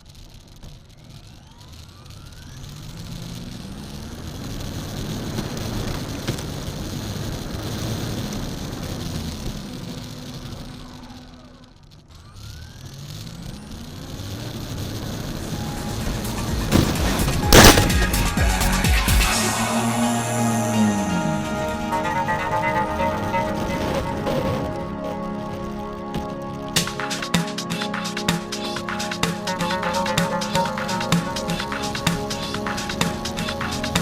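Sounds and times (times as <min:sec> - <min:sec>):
rc car motor whining: 0:00.0 - 0:17.0
wind and tyre rush: 0:16.4 - 0:18.3.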